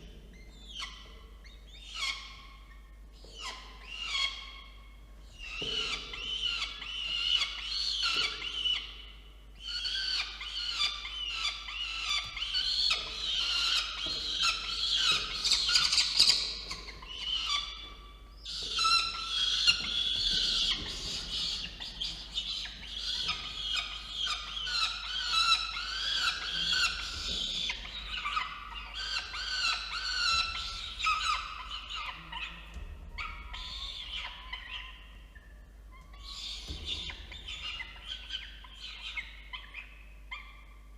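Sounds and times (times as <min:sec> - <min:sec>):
falcon chicks begging screams: 0:09.6 - 0:35.2, 0:35.9 - 0:40.5.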